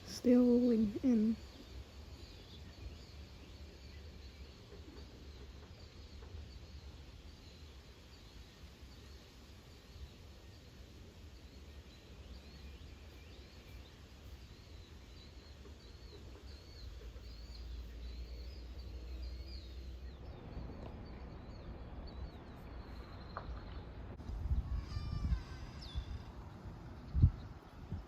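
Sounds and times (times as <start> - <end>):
small birds chirping: 0.0 - 28.0
wind rumble on microphone: 19.0 - 28.0.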